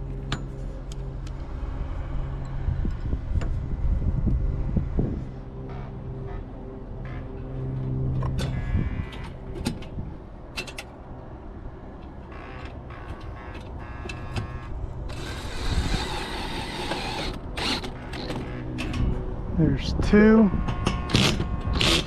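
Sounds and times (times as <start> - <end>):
cordless drill whining: 15.1 - 18.6, 21.1 - 22.0.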